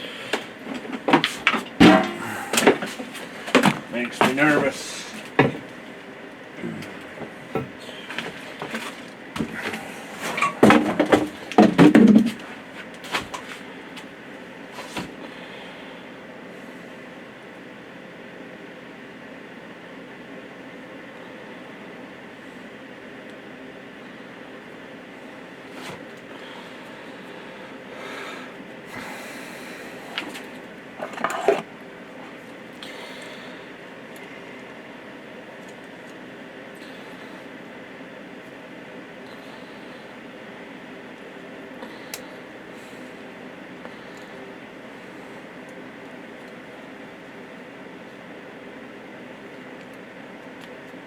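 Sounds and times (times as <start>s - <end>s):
steady background hum: 0.0s - 51.0s
parts and tools clattering: 0.7s - 5.6s, 31.0s - 31.6s.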